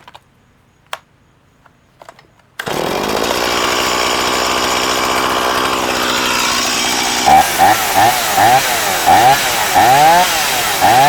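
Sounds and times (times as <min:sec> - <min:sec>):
faint handling clicks: 0:00.0 - 0:02.7
chainsaw engine running: 0:02.6 - 0:11.0.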